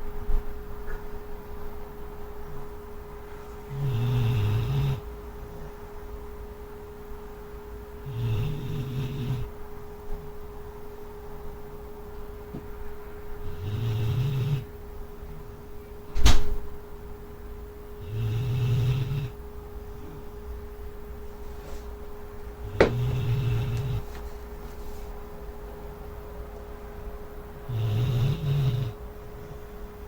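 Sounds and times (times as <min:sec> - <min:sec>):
dog snoring: 0:03.6 - 0:05.1, 0:08.0 - 0:09.6, 0:13.4 - 0:14.8, 0:18.0 - 0:19.4, 0:22.6 - 0:24.2, 0:27.6 - 0:29.8
sharp thump: 0:16.2 - 0:16.6.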